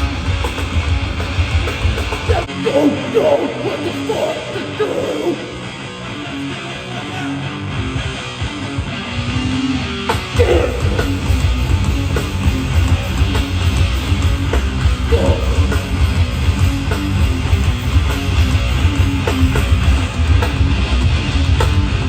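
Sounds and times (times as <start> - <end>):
distorted electric guitar: 0.0 - 22.0
hardcore band playing live: 0.0 - 22.0
pounding beat: 10.2 - 21.9.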